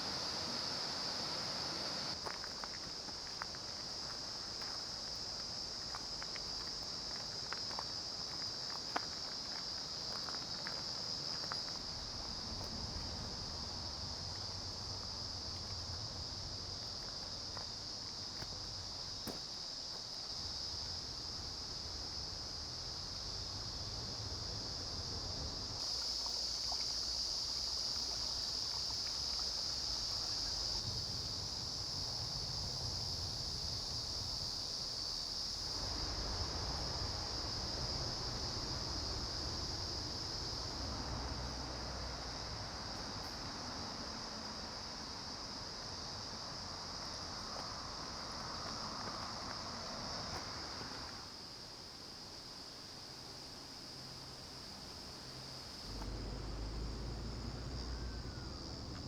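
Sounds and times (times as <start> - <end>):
mountain stream rushing: 0.0 - 4.7
insects droning: 0.0 - 59.0.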